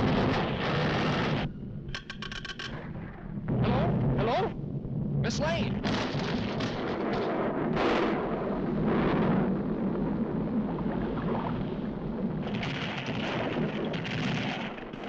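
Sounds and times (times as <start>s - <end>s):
cartoon volcano rumble: 0.0s - 1.5s, 2.8s - 15.0s
cartoon volcano blasts: 3.5s - 15.0s.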